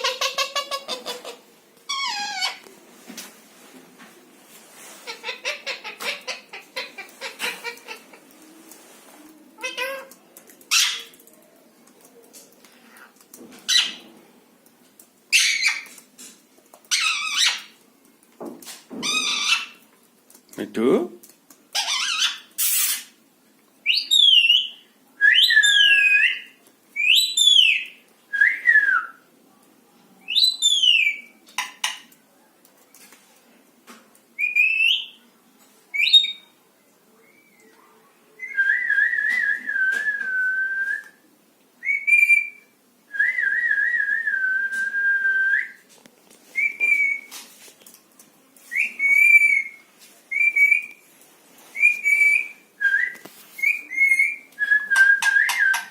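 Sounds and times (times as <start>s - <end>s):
parrot whistling: 51.8s - 55.9s.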